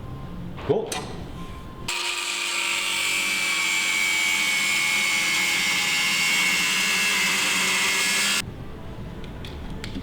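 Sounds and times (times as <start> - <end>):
angle grinder on steel: 1.9 - 8.4.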